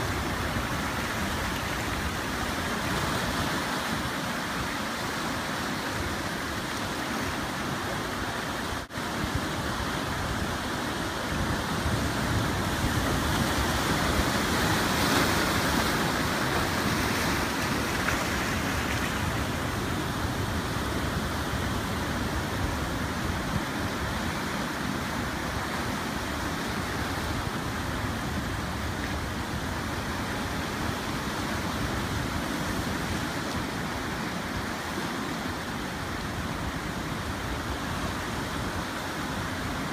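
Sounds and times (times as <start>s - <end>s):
ocean surf washing in: 0.0s - 39.9s.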